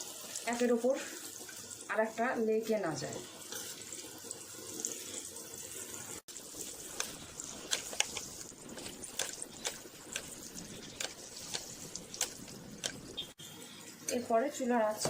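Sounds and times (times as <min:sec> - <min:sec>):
food deep-frying in oil: 0:00.0 - 0:15.0
oil crackling and popping: 0:06.2 - 0:13.4.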